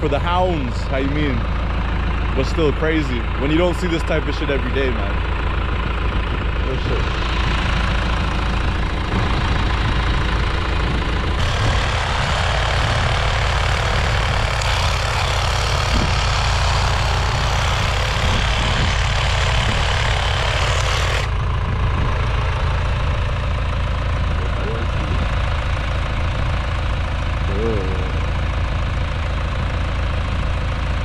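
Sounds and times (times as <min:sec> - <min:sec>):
engine idling: 0:00.0 - 0:31.0.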